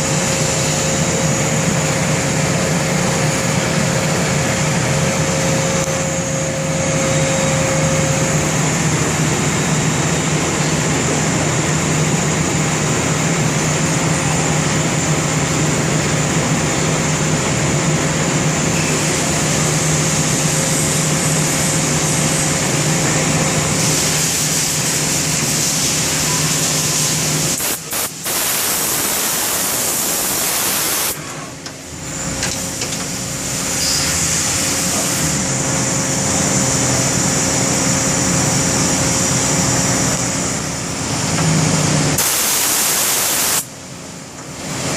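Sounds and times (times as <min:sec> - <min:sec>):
lathe humming and whining: 0:00.0 - 0:42.2
hiss: 0:23.7 - 0:31.3, 0:42.2 - 0:43.7.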